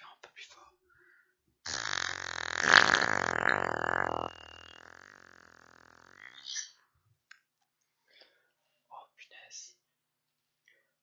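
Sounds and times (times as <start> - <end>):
buzzing fart: 1.6 - 6.7.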